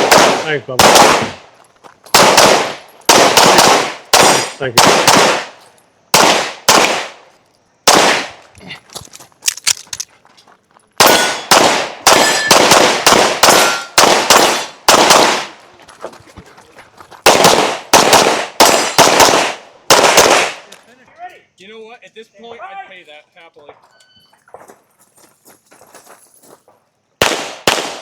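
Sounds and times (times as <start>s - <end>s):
pistol shots: 0.0s - 1.5s, 2.1s - 8.4s, 11.0s - 15.6s, 17.2s - 20.8s, 27.2s - 28.0s
metallic ring of steel targets: 11.0s - 11.5s, 12.2s - 12.6s, 13.5s - 14.0s.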